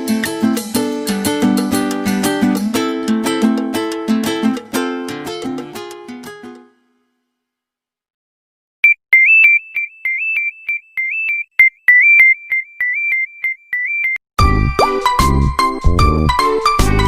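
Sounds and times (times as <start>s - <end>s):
fuller ringtone tune: 8.8s - 14.8s.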